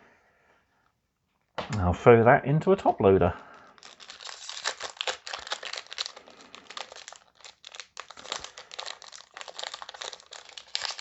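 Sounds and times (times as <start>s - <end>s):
plastic packaging crackling: 3.5s - 11.0s.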